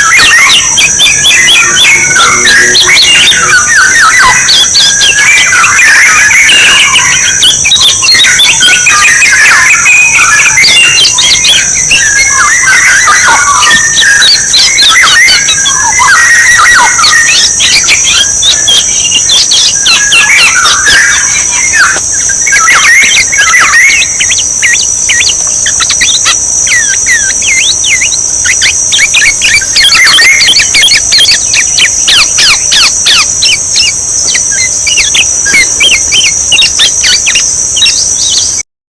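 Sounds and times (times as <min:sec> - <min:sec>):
steady high-pitched buzz: 0:00.0 - 0:38.6
orioles whistling and chattering: 0:00.0 - 0:38.7.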